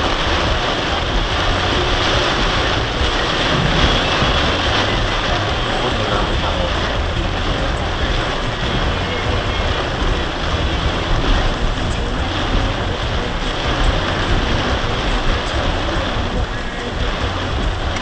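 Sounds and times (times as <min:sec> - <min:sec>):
storm wind buffeting microphone: 0:00.0 - 0:18.0.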